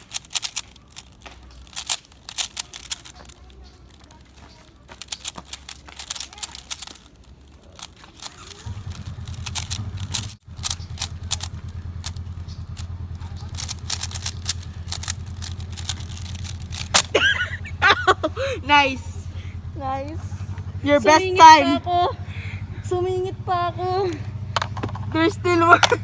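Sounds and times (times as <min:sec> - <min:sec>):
puzzle cube clicking: 0:00.0 - 0:17.7.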